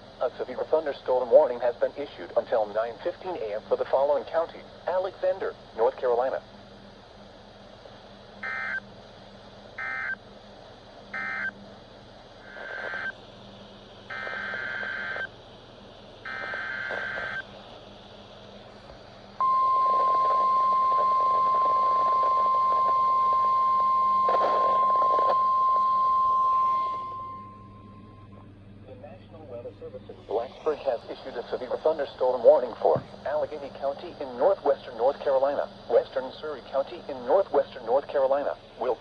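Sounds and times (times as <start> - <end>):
faint radio hiss: 0.0 - 28.1, 28.7 - 39.0
steady alarm tone: 8.4 - 8.9, 9.8 - 10.2, 11.1 - 11.6, 12.4 - 13.2, 14.1 - 15.3, 16.2 - 17.5, 19.4 - 28.6
digital data bursts: 12.5 - 13.2, 14.1 - 15.3, 16.3 - 17.4.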